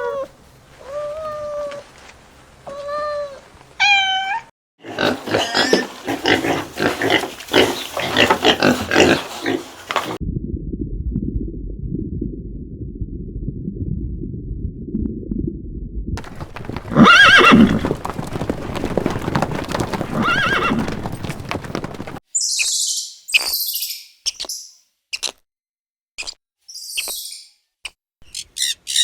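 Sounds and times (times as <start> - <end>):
low steady rumble: 10.2 - 16.4
horse neighing: 16.2 - 22.2.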